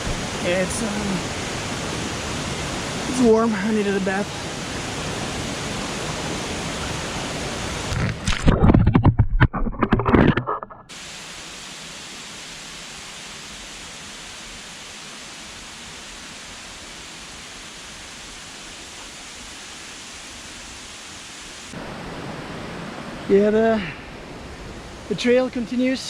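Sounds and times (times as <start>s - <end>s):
waterfall rushing: 0.0s - 8.4s, 10.9s - 26.0s.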